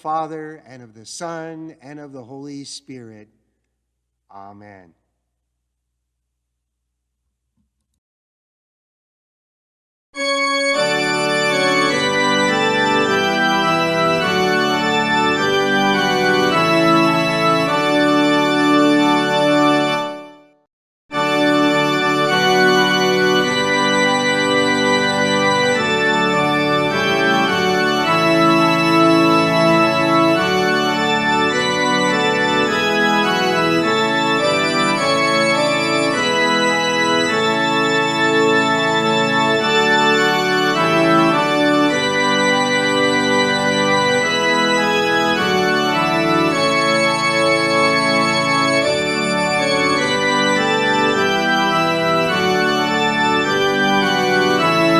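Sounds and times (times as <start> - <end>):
organ playing chords: 0.0 - 3.6, 4.3 - 4.9, 10.2 - 20.4, 21.1 - 54.9.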